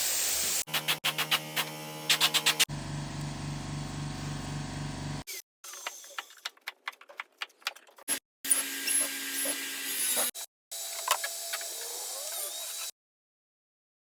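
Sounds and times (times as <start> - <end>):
tool clicks and taps: 5.7 - 8.0, 10.9 - 11.7
power tool whirring: 8.5 - 12.9.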